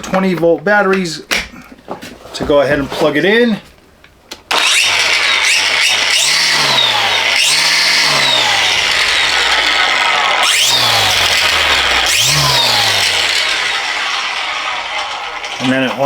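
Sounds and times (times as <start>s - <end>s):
string trimmer motor revving: 4.5s - 16.0s.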